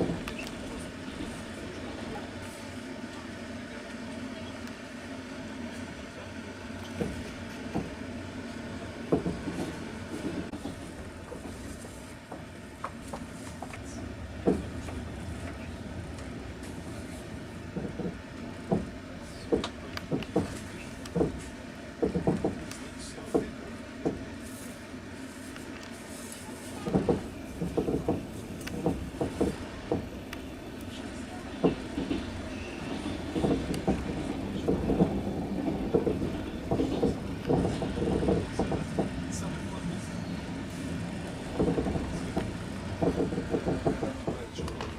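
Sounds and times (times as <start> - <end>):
train rumble inside carriage: 0.0 - 44.9
wheels clacking over rail joints: 9.0 - 24.3, 26.7 - 44.9.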